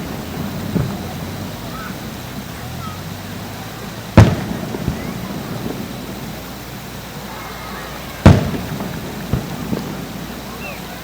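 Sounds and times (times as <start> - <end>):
rumble after firework bang: 0.0 - 10.9
firework bursts: 0.0 - 11.0
small firework pops: 4.2 - 6.9, 8.2 - 10.8.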